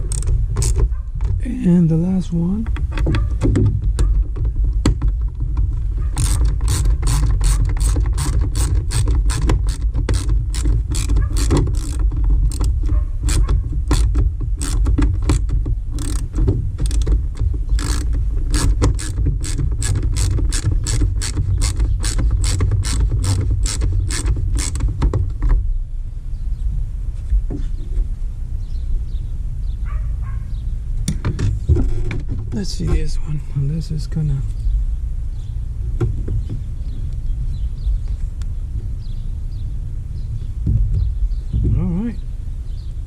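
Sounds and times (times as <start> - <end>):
hand ratchet clicking: 0.0 - 0.8, 6.1 - 24.9
low steady rumble: 0.0 - 43.0.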